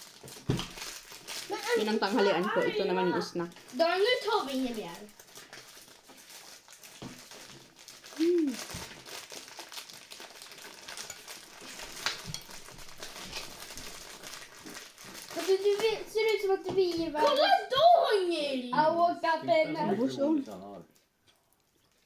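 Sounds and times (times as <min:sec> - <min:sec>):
candy wrappers crinkling: 0:00.0 - 0:18.2
short voice: 0:08.2 - 0:08.6.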